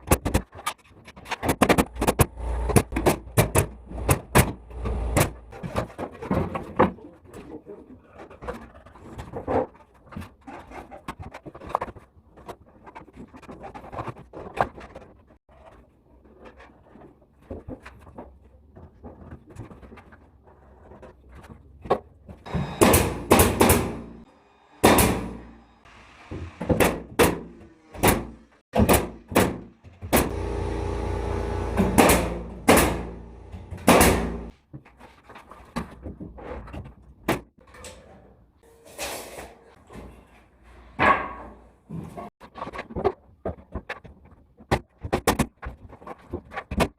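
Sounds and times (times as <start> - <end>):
knocks and bangs of renovation work: 0.0 - 15.8, 16.4 - 37.8
steady mechanical noise: 30.1 - 34.5.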